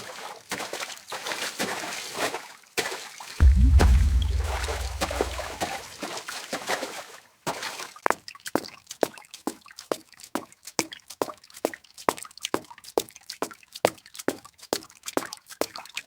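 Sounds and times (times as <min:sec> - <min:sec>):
deep boom: 0:03.4 - 0:05.8
water plops and drips: 0:03.4 - 0:05.8.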